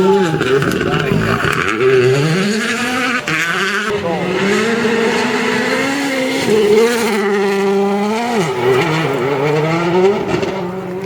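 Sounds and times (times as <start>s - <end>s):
rally car engine revving: 0.0s - 11.0s.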